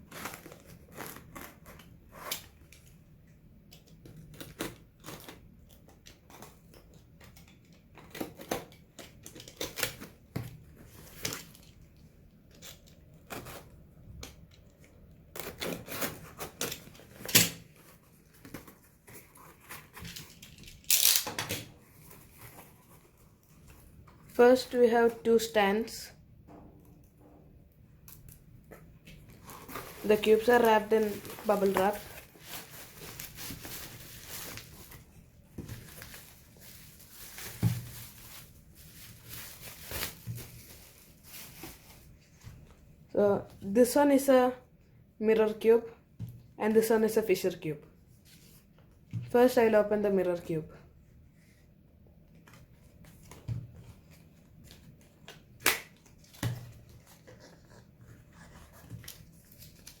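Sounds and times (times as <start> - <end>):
bubble wrap crinkling: 0.0 - 2.9, 4.2 - 24.4, 29.1 - 42.4, 52.4 - 60.0
wrapping rustling: 29.1 - 42.8, 52.4 - 60.0.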